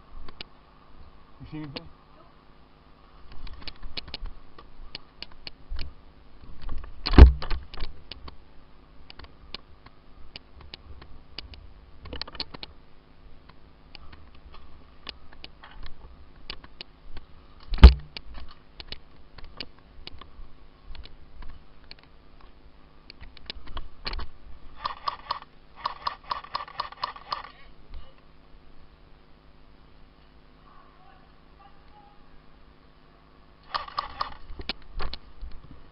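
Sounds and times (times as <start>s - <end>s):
airsoft guns clicking and snapping: 9.1s - 12.8s, 20.9s - 27.6s, 33.6s - 35.3s
full-auto gun bursts: 33.7s - 34.4s.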